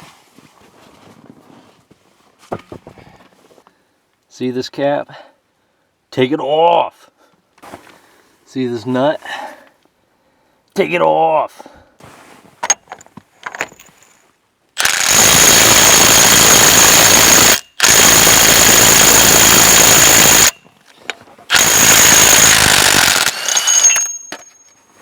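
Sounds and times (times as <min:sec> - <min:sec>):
impact wrench hammering: 0:14.8 - 0:20.6, 0:21.5 - 0:24.8.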